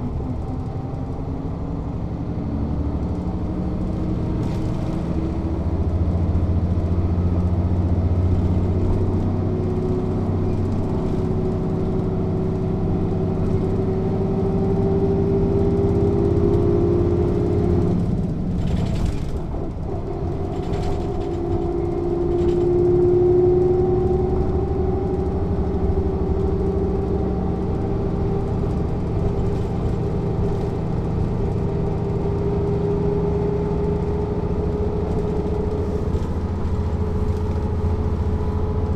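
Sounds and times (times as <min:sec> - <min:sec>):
bus diesel engine running: 0:00.0 - 0:38.9.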